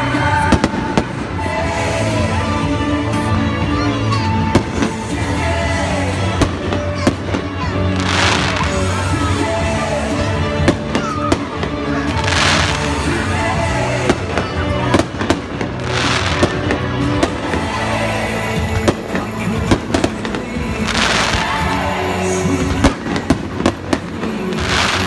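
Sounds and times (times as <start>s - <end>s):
fireworks bangs and cracks: 0.0s - 2.8s, 4.3s - 25.0s
music: 0.0s - 25.0s
fireworks hissing crackle: 4.5s - 9.6s, 10.7s - 25.0s.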